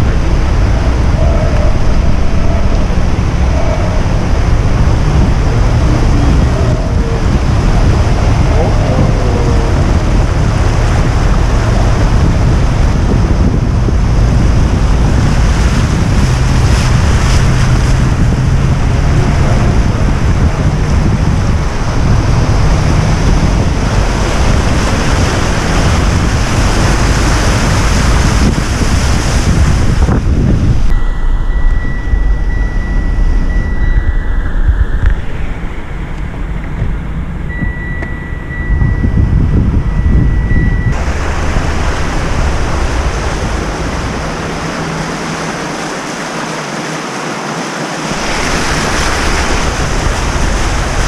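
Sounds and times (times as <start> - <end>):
engine humming: 0.0 - 46.5, 48.1 - 51.0
steady high tone: 30.9 - 41.2
rush of water spray: 40.9 - 51.0.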